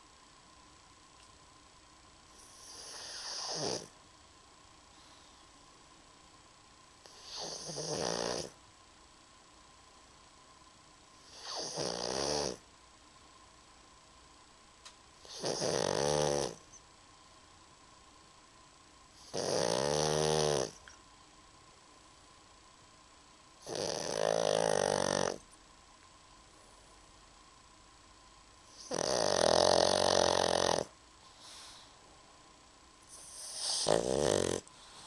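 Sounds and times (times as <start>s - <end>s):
dog snoring: 2.3s - 4.0s, 7.0s - 8.6s, 11.2s - 12.7s, 15.2s - 16.8s, 19.2s - 20.9s, 23.6s - 25.4s, 28.6s - 31.9s, 33.0s - 35.0s.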